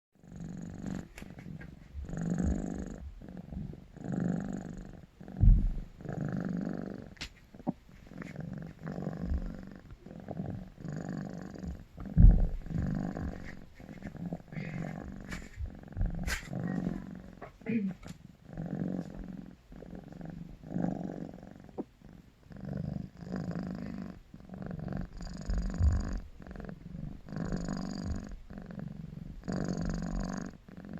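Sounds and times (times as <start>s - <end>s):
cat purring: 0.2s - 30.9s
low thumps: 0.8s - 3.9s, 4.7s - 6.2s, 8.7s - 10.7s, 11.5s - 17.6s, 24.9s - 28.6s.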